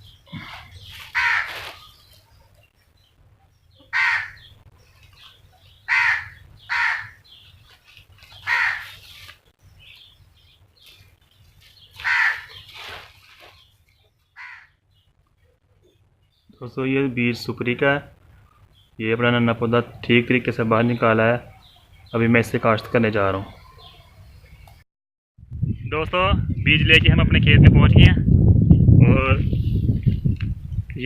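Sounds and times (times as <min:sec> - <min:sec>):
crow cawing: 0:01.1 - 0:01.6, 0:03.9 - 0:04.5, 0:05.9 - 0:07.2, 0:08.4 - 0:09.0, 0:12.0 - 0:12.6, 0:14.4 - 0:14.8.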